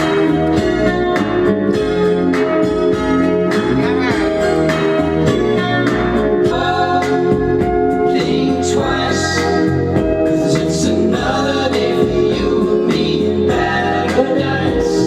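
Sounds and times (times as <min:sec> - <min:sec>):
sustained instrumental chords: 0:00.0 - 0:15.0
person singing: 0:03.2 - 0:05.0, 0:06.3 - 0:15.0.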